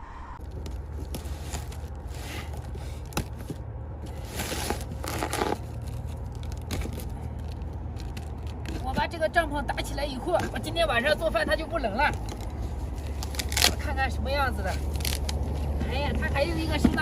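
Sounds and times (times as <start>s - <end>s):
packaging rustling and crinkling: 0.4s - 8.9s, 12.1s - 13.9s, 14.6s - 15.9s.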